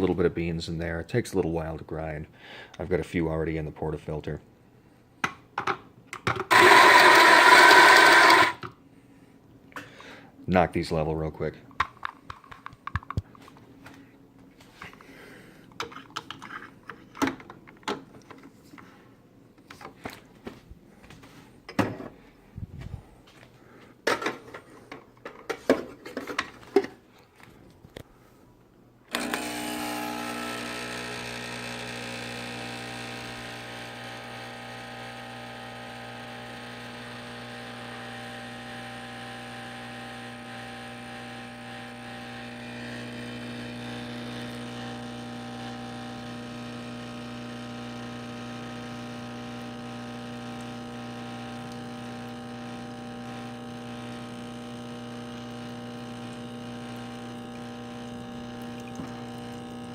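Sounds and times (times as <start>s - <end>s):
espresso machine pump humming: 6.5s - 8.6s, 29.1s - 59.9s.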